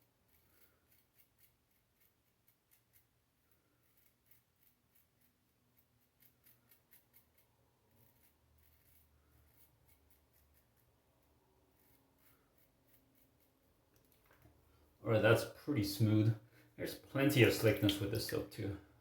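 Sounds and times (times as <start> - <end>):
razor scraping stubble: 0.1 - 11.0, 11.7 - 14.2.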